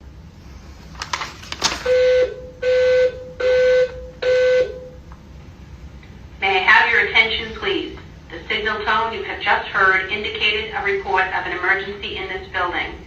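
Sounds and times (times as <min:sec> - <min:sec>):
buzzy alarm beeps: 0:01.8 - 0:05.0.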